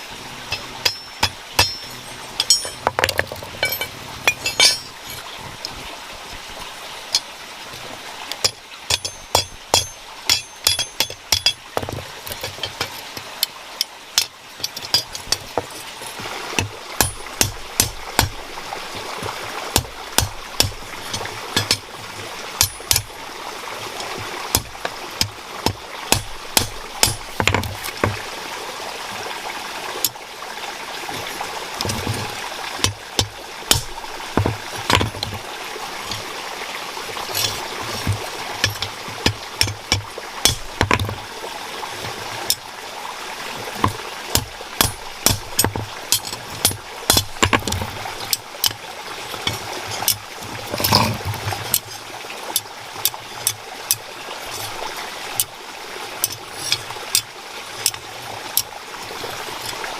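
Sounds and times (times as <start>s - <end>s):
running stream water: 0.0s - 59.9s
hand tools knocking and clinking: 0.5s - 5.2s, 8.4s - 13.0s, 13.8s - 18.4s, 19.7s - 22.0s, 22.6s - 23.2s, 24.0s - 28.2s, 31.8s - 35.4s, 37.3s - 41.2s, 43.8s - 48.8s, 49.4s - 51.9s.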